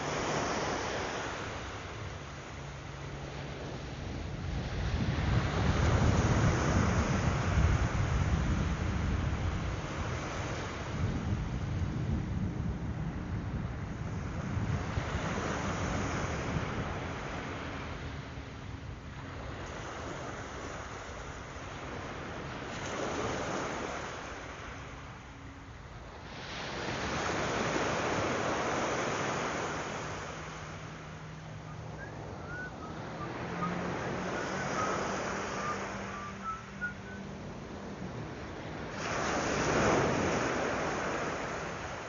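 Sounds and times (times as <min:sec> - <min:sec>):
surf breaking on a sandy beach: 0:00.0 - 0:42.0.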